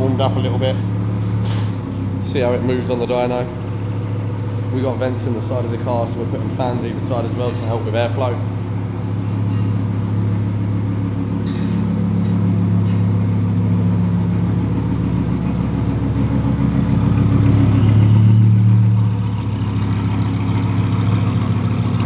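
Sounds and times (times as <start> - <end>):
car engine running at low revs: 0.0 - 22.0.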